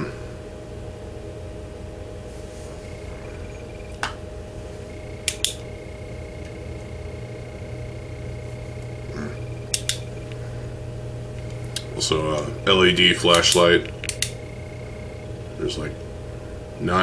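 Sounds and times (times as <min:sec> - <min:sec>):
faint high whine: 0:00.0 - 0:17.0
steady low hum: 0:00.0 - 0:17.0
switch clicks: 0:05.2 - 0:05.7, 0:09.7 - 0:10.4, 0:13.3 - 0:14.4.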